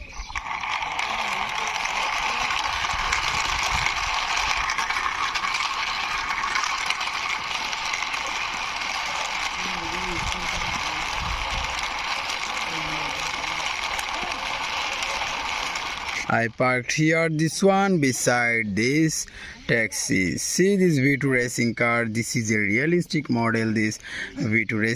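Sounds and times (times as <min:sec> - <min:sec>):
toy car wheels rattling on wall: 0:00.0 - 0:16.4.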